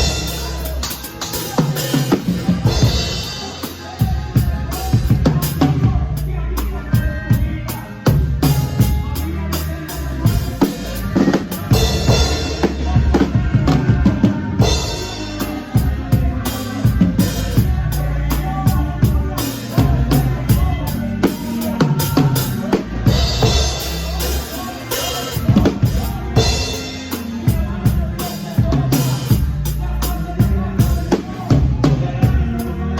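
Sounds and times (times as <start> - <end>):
live band music: 0.0 - 32.9.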